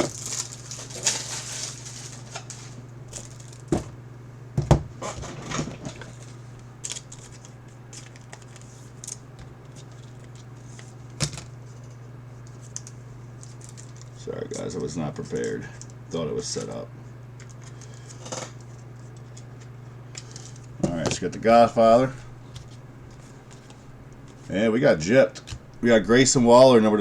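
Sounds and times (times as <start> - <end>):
clicks and rustles of handling: 5.0 - 16.8.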